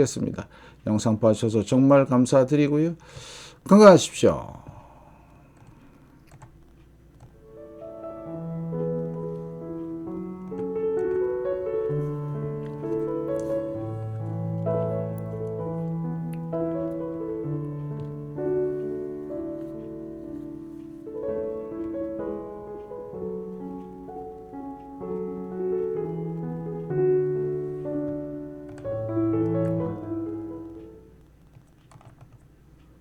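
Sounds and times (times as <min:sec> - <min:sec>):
slow piano music: 0:07.2 - 0:33.0.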